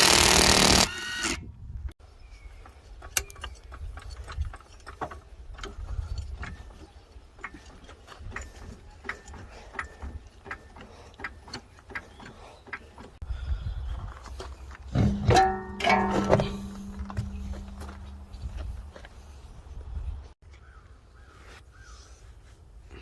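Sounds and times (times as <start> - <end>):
low rumble: 14.9 - 19.0
hand tools clinking on metal: 15.0 - 18.7.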